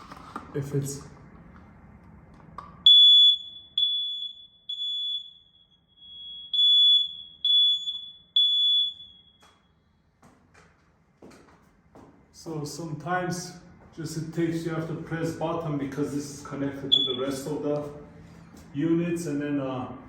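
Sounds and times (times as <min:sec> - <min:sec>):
smoke alarm beeping: 0:02.8 - 0:09.8, 0:16.9 - 0:17.5.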